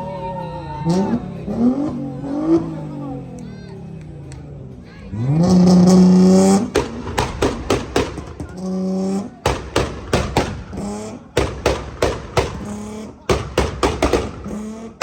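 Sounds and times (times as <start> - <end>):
car engine revving: 0.0 - 15.0
exhaust pops and bangs: 6.4 - 15.0.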